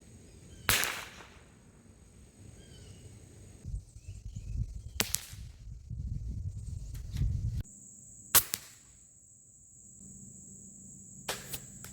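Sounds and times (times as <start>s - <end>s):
rifle shot crack with echo: 0.7s - 1.6s.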